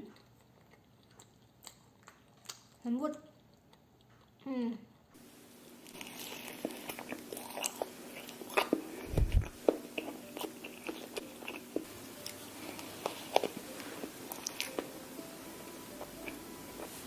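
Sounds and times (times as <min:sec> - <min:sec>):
chewing with clicks: 0:00.0 - 0:05.2.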